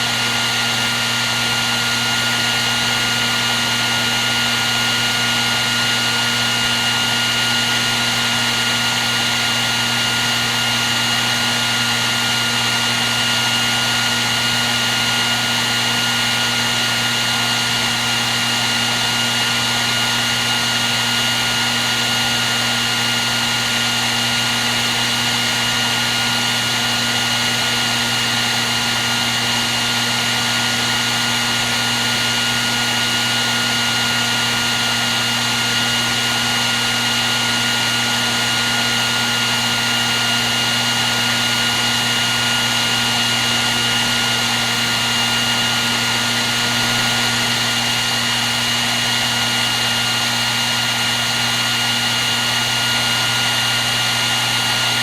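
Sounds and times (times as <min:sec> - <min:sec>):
hair dryer running: 0:00.0 - 0:55.0.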